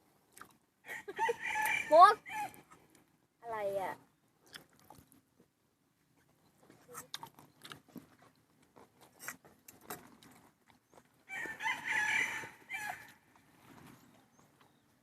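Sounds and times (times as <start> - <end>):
rooster crowing: 0.8 - 2.6, 11.3 - 13.2.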